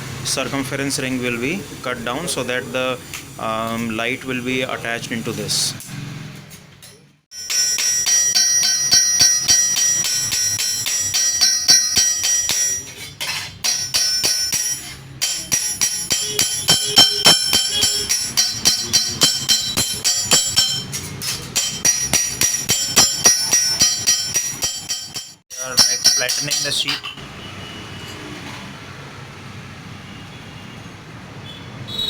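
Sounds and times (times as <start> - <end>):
hammer striking steel sheet: 7.4 - 27.2.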